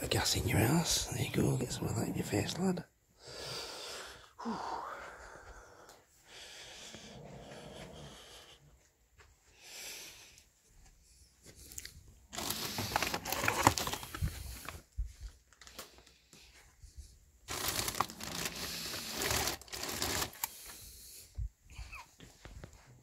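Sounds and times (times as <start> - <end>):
material crinkling and rustling: 12.3 - 16.6, 17.4 - 20.5.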